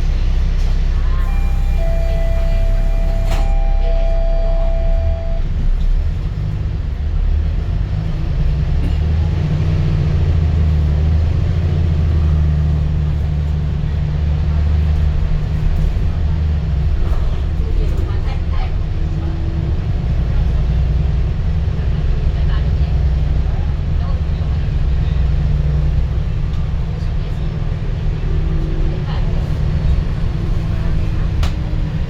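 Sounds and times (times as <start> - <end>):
bus engine drone: 0.0 - 32.0
bus door-closing chime: 1.2 - 5.6.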